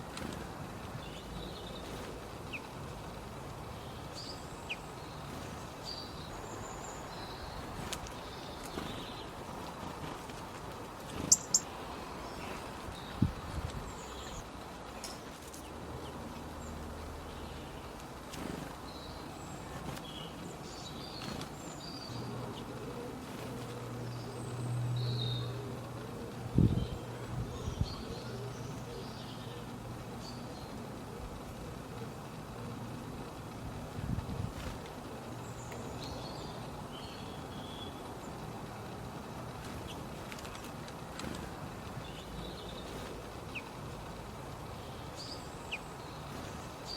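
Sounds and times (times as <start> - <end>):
small birds chirping: 0.0 - 46.9
high bird chirps: 11.1 - 11.7.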